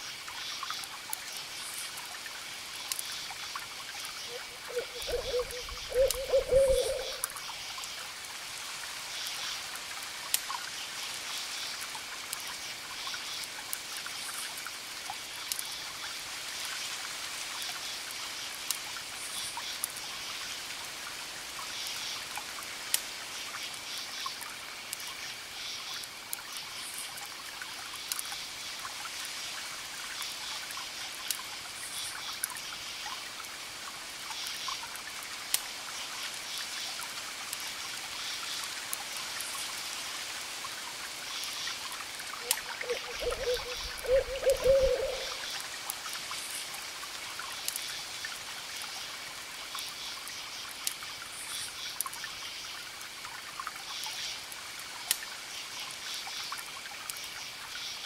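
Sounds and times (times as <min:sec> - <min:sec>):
owl hooting: 0:04.3 - 0:07.2, 0:42.4 - 0:45.4.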